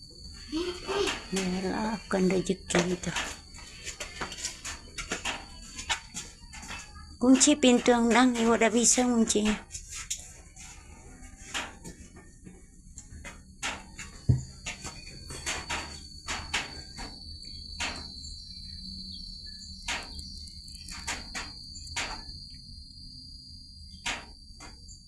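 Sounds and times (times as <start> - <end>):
cricket chirring: 0.0 - 25.0
heavy thump: 14.3 - 14.5.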